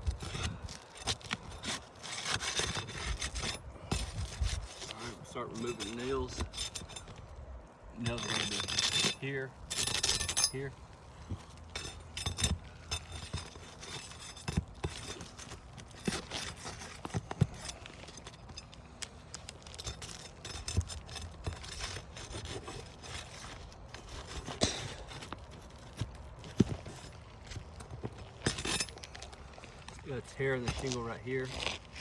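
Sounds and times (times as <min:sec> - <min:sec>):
pry bar scraping shingles: 0:00.0 - 0:32.0
sharp metal knocks and clinks: 0:00.2 - 0:07.2, 0:08.0 - 0:18.8, 0:24.3 - 0:29.3.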